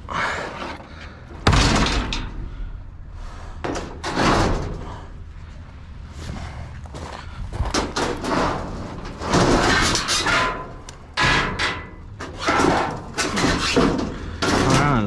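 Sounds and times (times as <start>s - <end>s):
scrap metal clanking and scraping: 0.2s - 2.7s, 3.6s - 5.2s, 7.6s - 15.0s.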